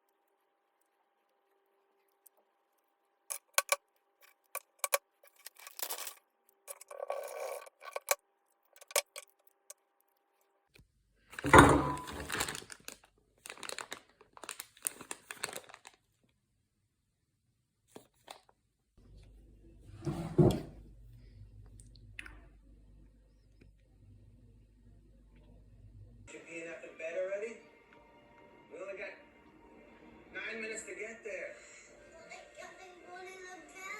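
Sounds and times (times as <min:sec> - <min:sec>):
rustling and scraping: 0:03.3 - 0:09.3, 0:11.4 - 0:12.7
low steady hum: 0:19.0 - 0:26.3.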